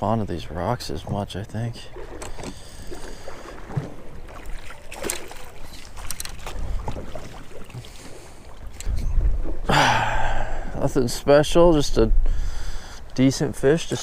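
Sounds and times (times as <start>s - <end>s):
water lapping: 0.0s - 11.2s
low wind rumble: 8.3s - 14.0s.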